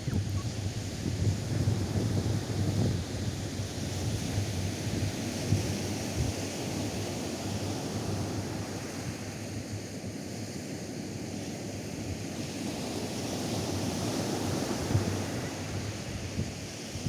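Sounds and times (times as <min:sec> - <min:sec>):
wind buffeting microphone: 0:00.0 - 0:09.3
waves breaking on beach: 0:00.0 - 0:17.0.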